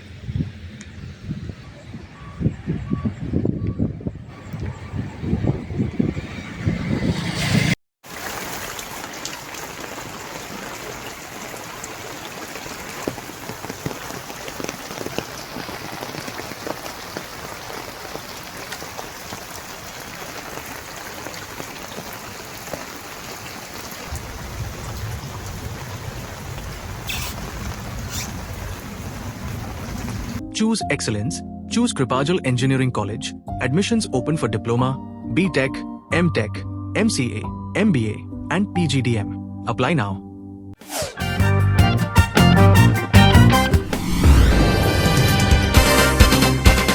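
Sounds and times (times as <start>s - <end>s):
low rumble: 4.4s - 7.8s, 43.7s - 45.8s
heavy rain falling: 8.0s - 30.4s.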